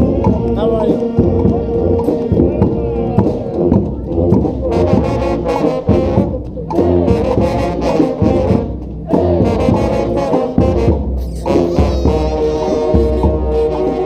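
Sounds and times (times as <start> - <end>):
brass band playing: 0.0 - 14.0.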